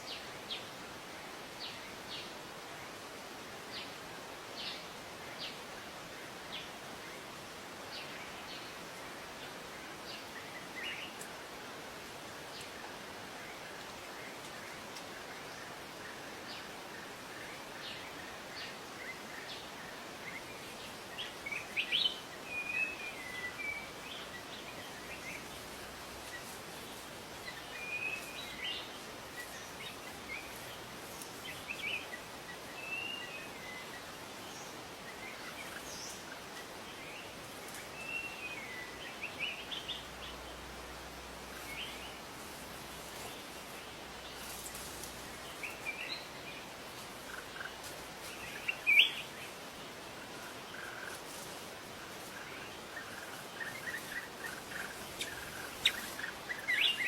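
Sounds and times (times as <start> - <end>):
steady background hiss: 0.0 - 57.0.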